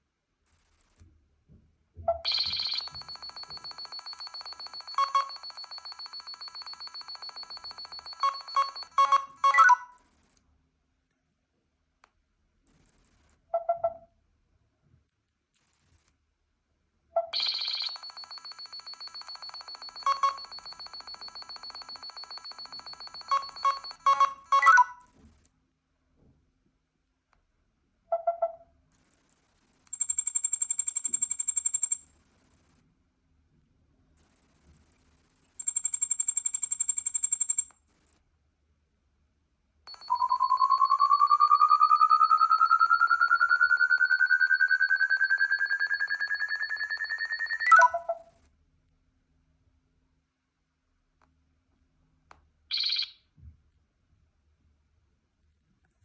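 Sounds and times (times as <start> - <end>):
electronic ringtone beeps: 0.5 - 1.0, 2.2 - 10.4, 12.7 - 13.4, 15.6 - 16.1, 17.3 - 25.5, 28.9 - 32.8, 34.2 - 38.2, 39.9 - 48.5, 52.7 - 53.2.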